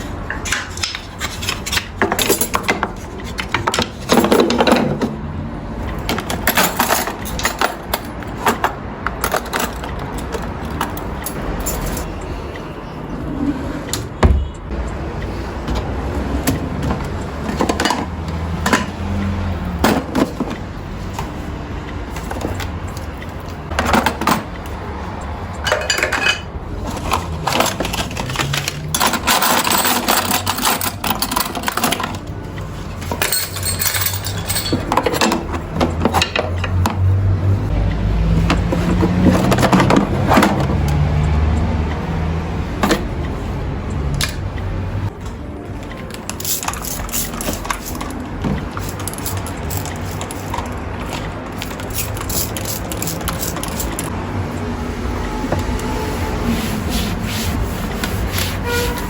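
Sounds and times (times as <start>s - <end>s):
clinks and knocks of objects: 0.2s - 5.2s, 6.1s - 12.1s, 25.6s - 32.3s, 33.0s - 37.0s, 45.1s - 54.1s
rustling or scrubbing: 46.4s - 59.0s.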